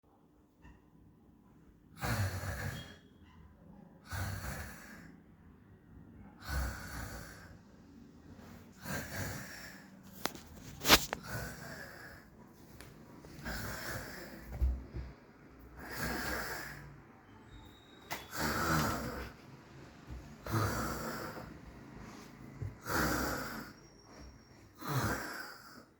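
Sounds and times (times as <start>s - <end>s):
person snoring: 2.0s - 2.9s, 4.1s - 5.1s, 6.4s - 7.6s, 8.7s - 12.3s, 13.4s - 14.4s, 15.8s - 17.0s, 18.3s - 19.4s, 20.4s - 21.6s, 22.8s - 23.8s, 24.8s - 25.9s.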